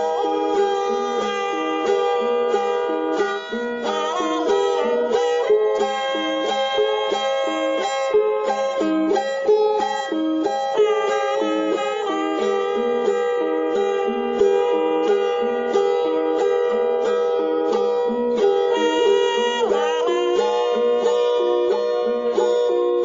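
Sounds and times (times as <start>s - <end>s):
plucked-string melody: 0.0s - 23.0s
held drone note: 18.3s - 22.8s.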